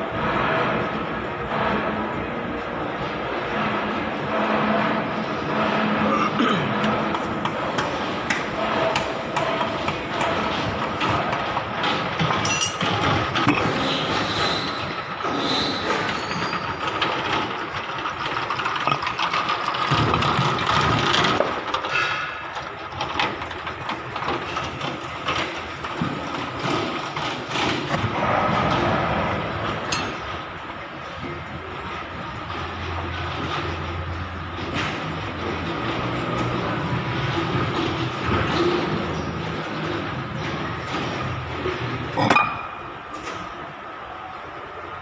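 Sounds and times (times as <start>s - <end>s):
steady background noise: 0.0s - 45.0s
hand tools clicking on metal: 12.2s - 13.7s.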